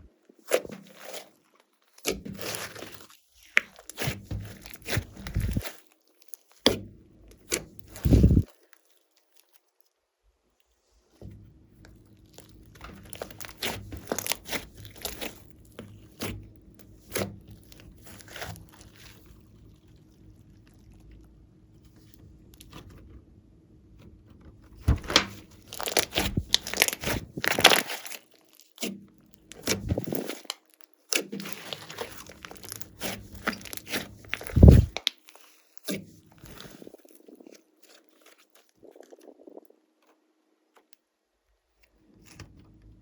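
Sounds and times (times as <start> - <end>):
slime crackling and popping: 1.9 - 9.6, 12.3 - 16.3, 17.0 - 19.6, 24.8 - 39.5.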